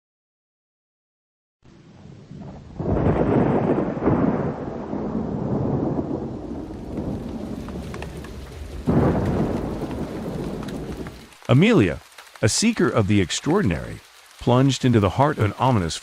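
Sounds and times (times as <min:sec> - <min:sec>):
rain falling: 0:01.8 - 0:16.0
thunder: 0:02.3 - 0:11.3.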